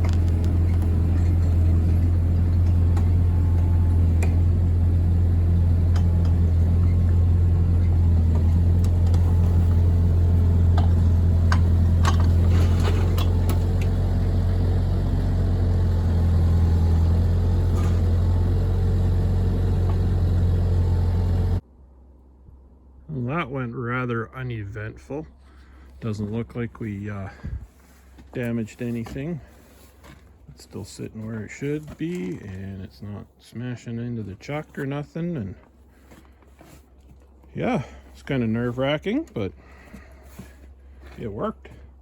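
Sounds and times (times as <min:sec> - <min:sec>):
light clanks and knocks: 0:00.0 - 0:04.7, 0:05.6 - 0:14.5
engine running steadily: 0:00.0 - 0:21.6, 0:25.4 - 0:32.8, 0:34.2 - 0:42.0.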